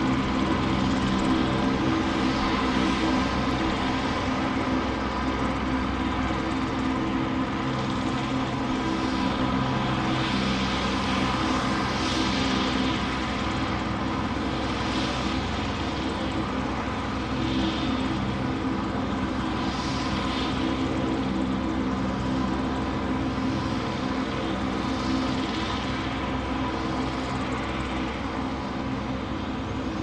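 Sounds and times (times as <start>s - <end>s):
steady engine drone: 0.0s - 30.0s.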